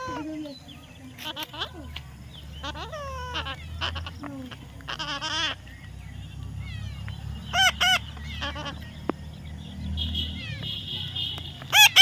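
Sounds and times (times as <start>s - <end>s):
parrot squawking: 2.5s - 5.6s, 6.6s - 8.8s, 11.7s - 12.0s.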